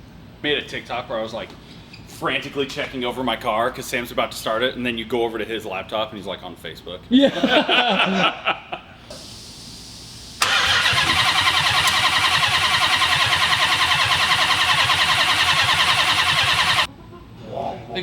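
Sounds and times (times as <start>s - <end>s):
engine starter cranking: 9.0s - 16.9s.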